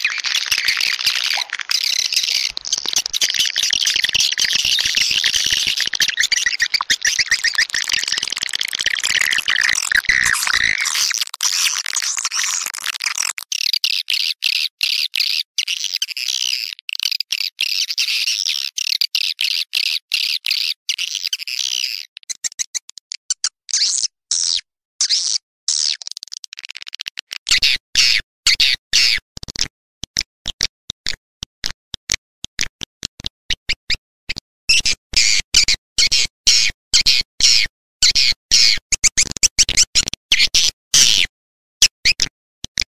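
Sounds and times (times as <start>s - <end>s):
swiftlets twittering and chirping: 0.0s - 13.3s.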